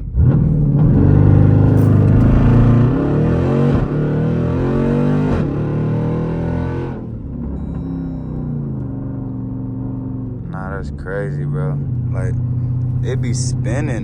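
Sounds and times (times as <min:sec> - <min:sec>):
engine at full throttle with upshifts: 0:00.0 - 0:14.0.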